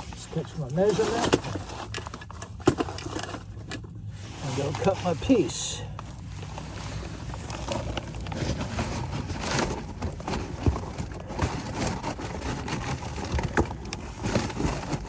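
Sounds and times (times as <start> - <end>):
knocks and clatters of tools: 0.6 - 3.9, 7.7 - 15.0.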